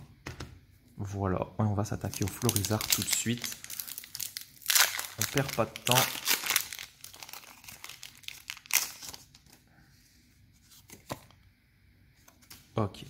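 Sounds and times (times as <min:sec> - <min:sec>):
foil wrapper tearing and crinkling: 0:02.0 - 0:09.3.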